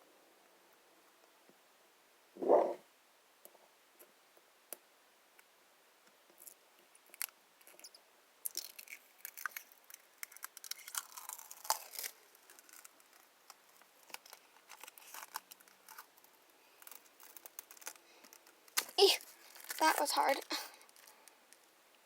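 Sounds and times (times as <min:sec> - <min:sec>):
plastic film crackling as peeled: 0:08.5 - 0:21.2.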